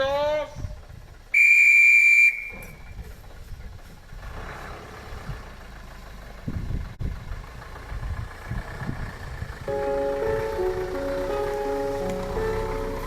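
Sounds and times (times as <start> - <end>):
whistle blast: 1.4 - 2.8
engine running at low revs: 3.0 - 13.0.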